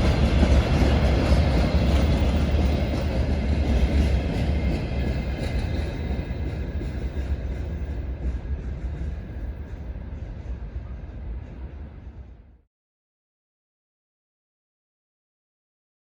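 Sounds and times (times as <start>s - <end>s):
freight train wheels rumbling on rail: 0.0s - 12.6s.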